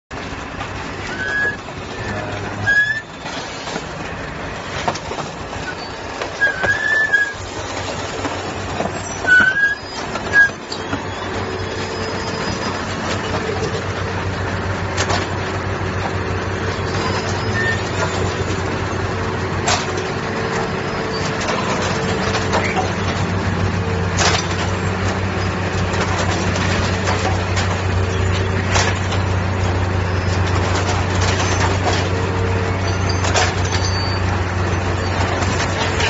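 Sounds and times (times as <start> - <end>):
heavy machinery engine drone: 0.1 - 36.0
short machinery squeals: 1.0 - 3.7, 5.6 - 7.4, 8.9 - 13.4, 16.8 - 18.4, 31.2 - 36.0.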